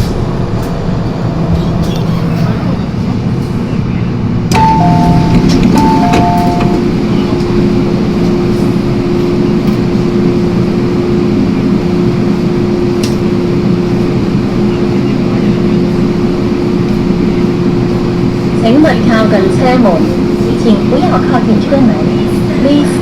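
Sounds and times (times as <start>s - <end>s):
train rumble: 0.0s - 23.0s
train motor whine: 4.5s - 23.0s.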